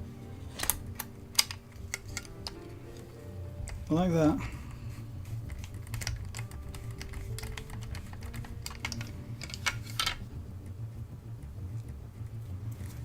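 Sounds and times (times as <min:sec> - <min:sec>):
small plastic parts clicking: 0:00.5 - 0:03.9, 0:05.3 - 0:10.3.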